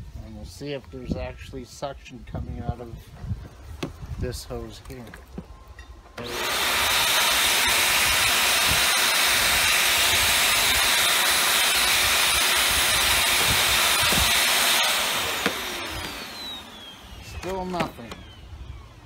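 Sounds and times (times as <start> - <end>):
vacuum cleaner motor running: 6.2 - 18.4.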